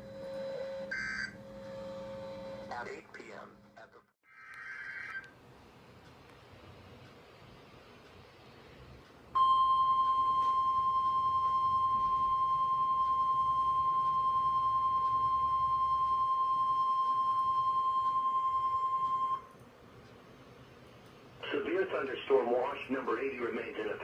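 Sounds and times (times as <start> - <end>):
steady high alarm beep: 9.4 - 19.6
faint radio hiss: 19.8 - 24.0.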